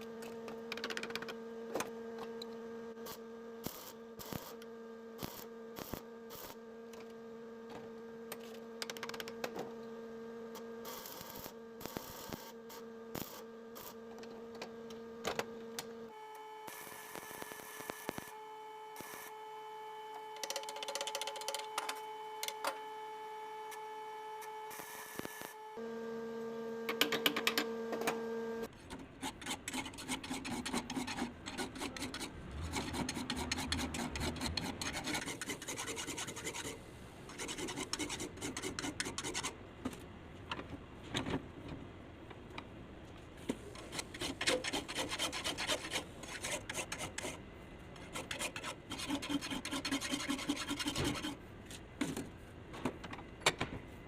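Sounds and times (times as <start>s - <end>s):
machine hum: 12.5s - 28.7s
file rasping on metal: 29.2s - 39.6s, 43.8s - 47.4s, 48.0s - 51.4s.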